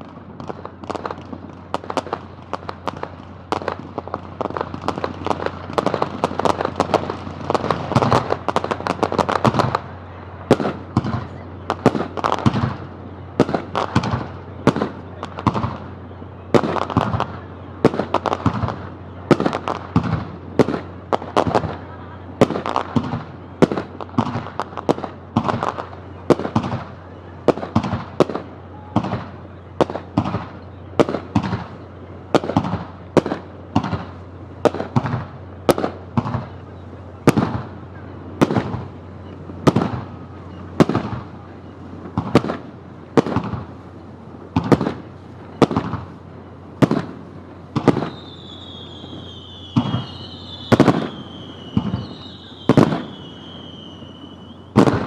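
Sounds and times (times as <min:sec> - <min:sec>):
firework shells bursting: 0:42.0 - 0:55.0
high falling whistles: 0:48.0 - 0:54.8.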